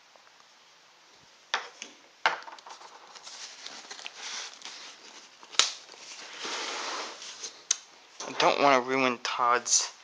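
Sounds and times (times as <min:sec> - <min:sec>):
cardboard scratching and rustling: 0:03.1 - 0:07.6.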